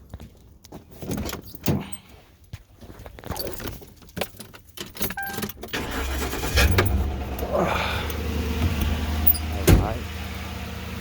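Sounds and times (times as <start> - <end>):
car keys jangling: 3.2 - 7.4, 8.1 - 9.8.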